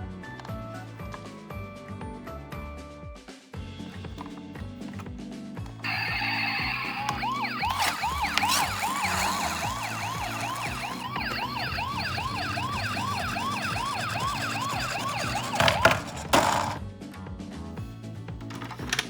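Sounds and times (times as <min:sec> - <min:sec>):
toy siren yelp: 0:05.8 - 0:16.7.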